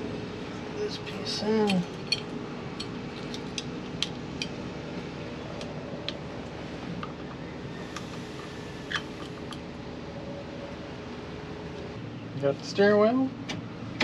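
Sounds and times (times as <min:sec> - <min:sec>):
steady background hum: 0:00.0 - 0:14.0.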